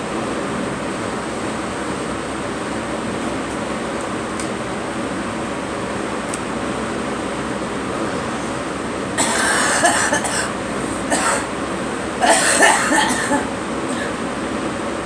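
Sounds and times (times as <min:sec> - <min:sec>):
steady hum: 0:00.0 - 0:15.0
person coughing: 0:09.2 - 0:11.5, 0:12.2 - 0:14.2.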